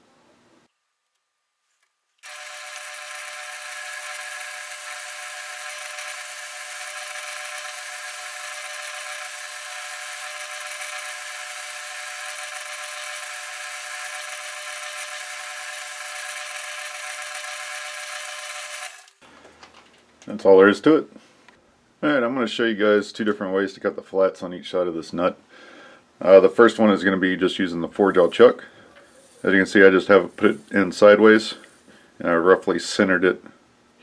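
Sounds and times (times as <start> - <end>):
lathe whining and hissing: 2.2 - 19.1.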